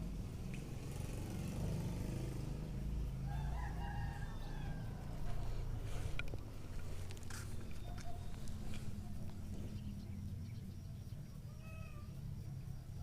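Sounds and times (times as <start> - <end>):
rooster crowing: 3.2 - 5.8.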